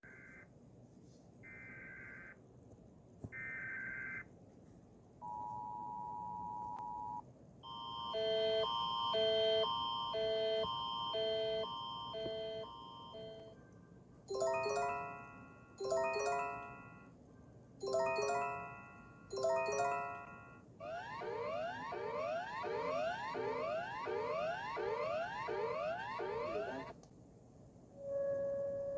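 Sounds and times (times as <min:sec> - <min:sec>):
two-tone attention signal: 0:07.0 - 0:13.6
chime-like alert tones: 0:14.3 - 0:17.1, 0:17.8 - 0:20.6.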